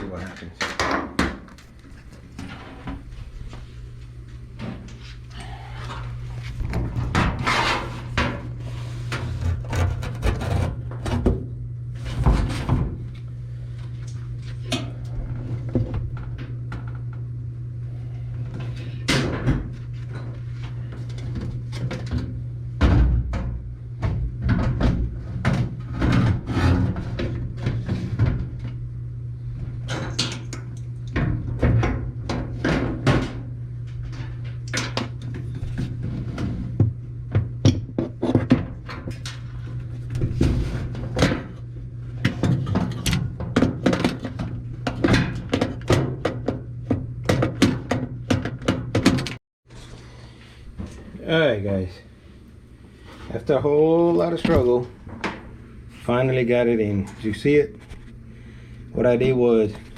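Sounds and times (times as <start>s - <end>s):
steady low hum: 0.0s - 59.9s
washing machine parts knocking: 42.2s - 49.4s.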